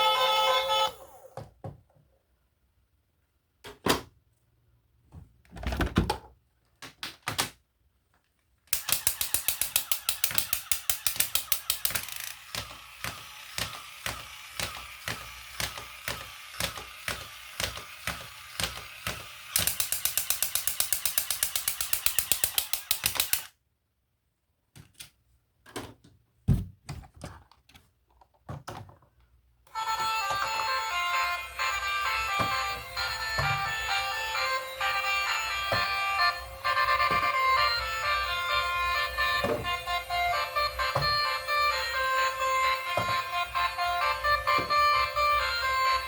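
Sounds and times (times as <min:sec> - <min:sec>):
sharp mechanical clicks: 0:08.7 - 0:23.6
music: 0:29.8 - 0:46.0.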